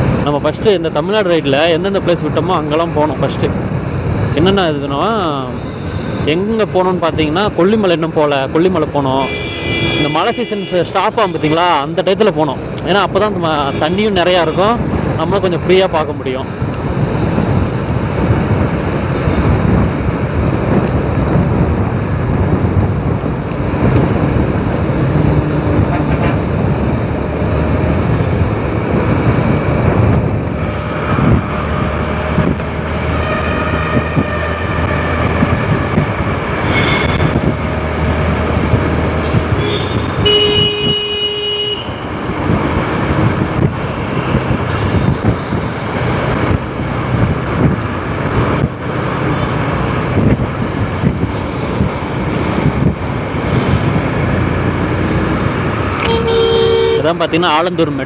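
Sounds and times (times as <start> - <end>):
vehicle horns honking: 9.1 - 11.8, 13.5 - 14.7, 36.6 - 37.4, 39.2 - 42.2, 56.0 - 57.2
wind on microphone: 16.5 - 41.1, 41.8 - 56.6
motorcycle engine: 50.6 - 57.1.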